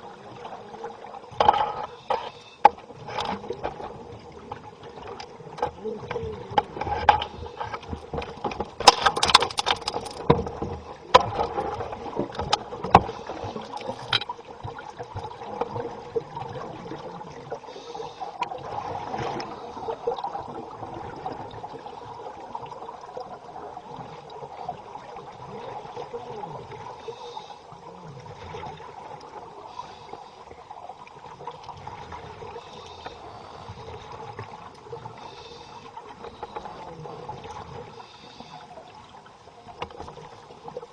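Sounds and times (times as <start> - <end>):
murky water wash: 0.0 - 40.9
underwater clicks and knocks: 1.3 - 16.7, 39.7 - 40.3
bubbling underwater: 18.4 - 26.9.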